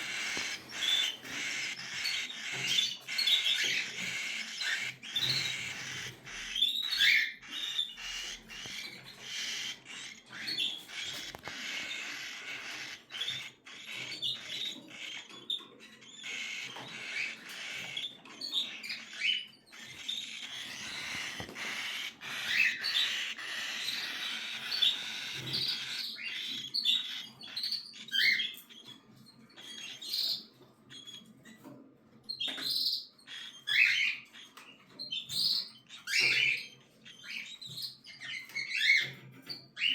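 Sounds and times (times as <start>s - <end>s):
bird chicks raspy chatter: 0.0s - 39.9s.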